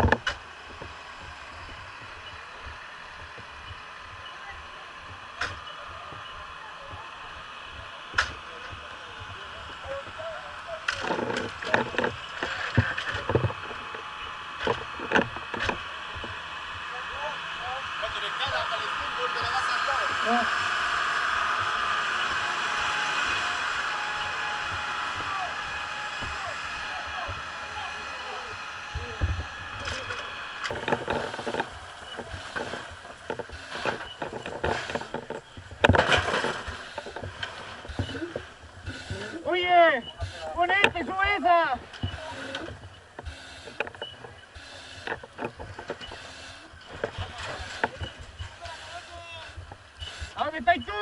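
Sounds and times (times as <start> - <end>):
steady mechanical hum: 0.0 - 51.0
tools striking a roof: 29.0 - 39.4
knocks and scrapes on a roof: 29.0 - 50.4.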